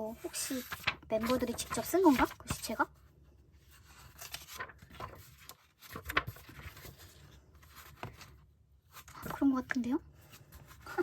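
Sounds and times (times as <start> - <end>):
paper pages rustling: 0.0 - 11.0.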